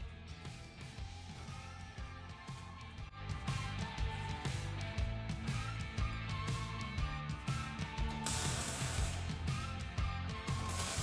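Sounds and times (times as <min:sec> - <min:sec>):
music with beat and bass: 0:00.0 - 0:11.0
bright hiss: 0:08.2 - 0:09.2.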